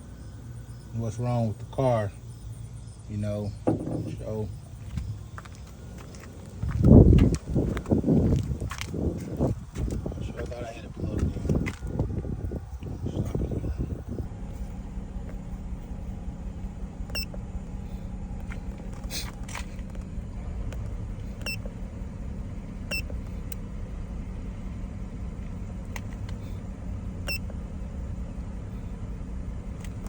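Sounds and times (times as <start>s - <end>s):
car engine idling: 0.0s - 30.0s
scan tool beeps: 17.1s - 17.4s.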